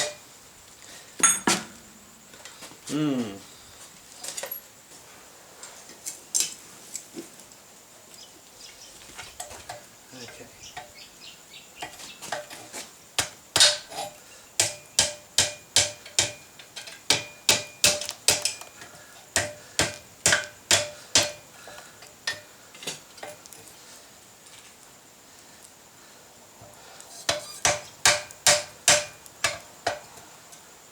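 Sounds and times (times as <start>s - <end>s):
hammer striking steel on anvil: 1.2s - 2.1s, 14.6s - 16.4s, 17.1s - 18.6s, 19.4s - 21.5s, 27.3s - 30.0s.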